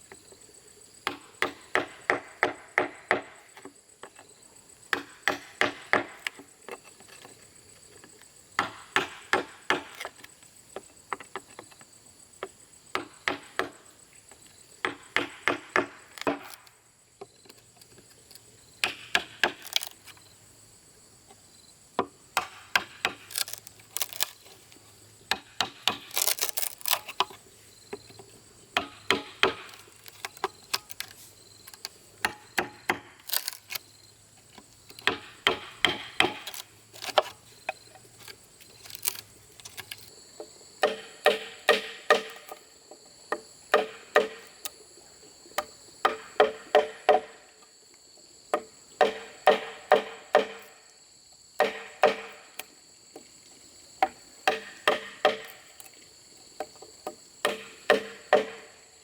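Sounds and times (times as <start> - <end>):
hand tool striking bamboo: 1.0 - 4.2, 4.9 - 7.4, 8.6 - 11.8, 12.4 - 13.8, 14.8 - 17.3, 18.8 - 20.2, 22.0 - 24.6, 25.3 - 28.1, 28.8 - 40.1, 40.8 - 42.7, 43.3 - 44.8, 45.6 - 47.4, 48.5 - 50.9, 51.6 - 52.7, 54.0 - 56.0, 56.6 - 58.9.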